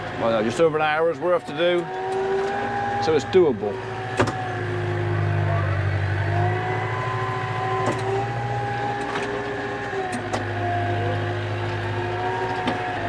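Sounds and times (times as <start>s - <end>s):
tractor engine running: 0.0s - 13.0s.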